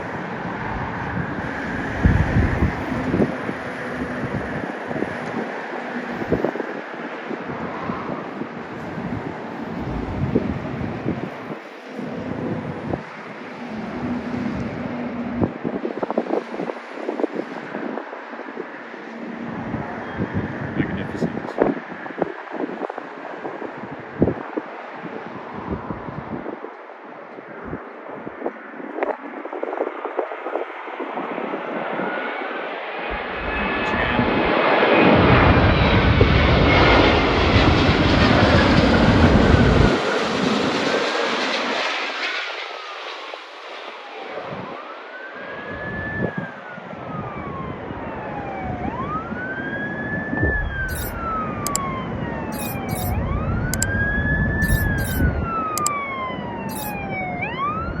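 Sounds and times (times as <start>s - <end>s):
jet airliner roaring overhead: 0.0s - 17.5s, 28.4s - 44.5s
emergency siren wailing: 44.3s - 58.0s.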